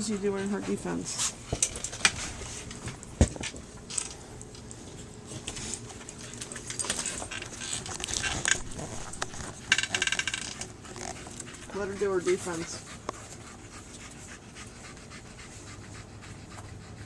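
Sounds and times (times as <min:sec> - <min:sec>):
light clicks and jingles: 0:02.6 - 0:11.6.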